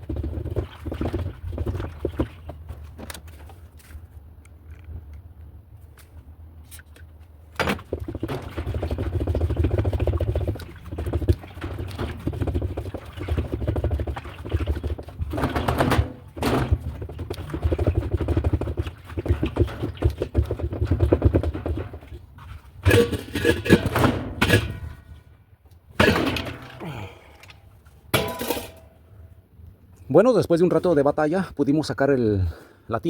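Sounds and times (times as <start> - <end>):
metal knocking and rattling: 7.5 - 25.2, 28.1 - 29.0.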